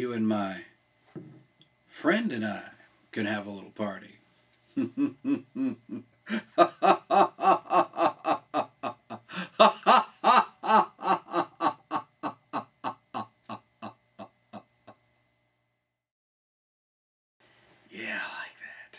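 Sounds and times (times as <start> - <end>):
person laughing: 4.8 - 15.0.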